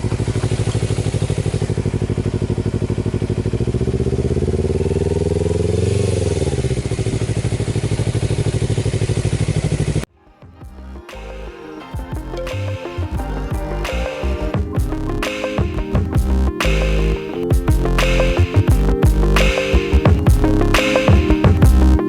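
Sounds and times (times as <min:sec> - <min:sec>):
motorcycle engine revving: 0:00.0 - 0:10.1
music: 0:10.1 - 0:22.0.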